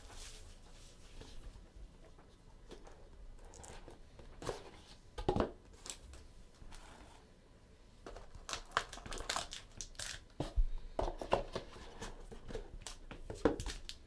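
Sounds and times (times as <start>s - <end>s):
plastic wrapping crinkling and tearing: 8.3s - 10.4s.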